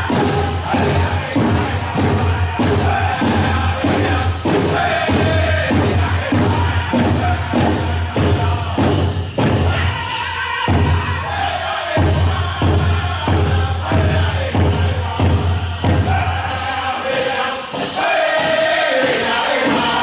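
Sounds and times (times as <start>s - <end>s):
large drum steady beat: 0.0s - 10.0s, 10.6s - 11.3s, 12.0s - 16.4s
group singing loudly: 0.0s - 20.0s.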